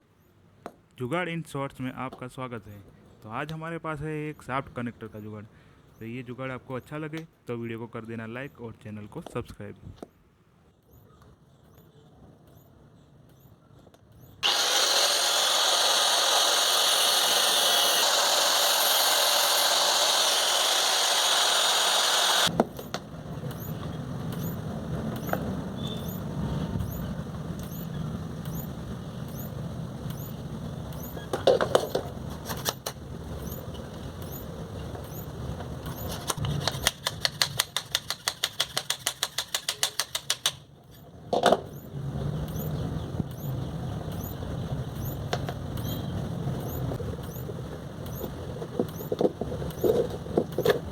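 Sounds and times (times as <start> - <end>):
electric motor running: 14.4 - 22.5
rapid clicks: 35.9 - 40.7.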